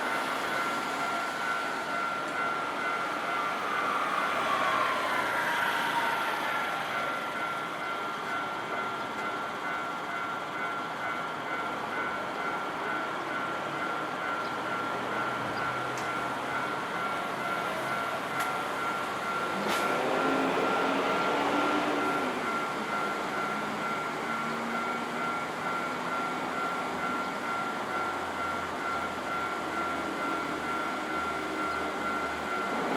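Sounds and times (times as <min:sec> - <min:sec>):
train passing: 0:00.0 - 0:32.9
level crossing alarm ringing: 0:06.9 - 0:32.9.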